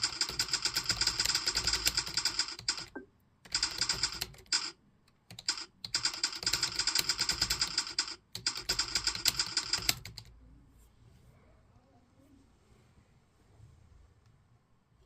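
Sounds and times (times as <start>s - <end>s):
fast typing on computer keyboard: 0.0s - 10.3s.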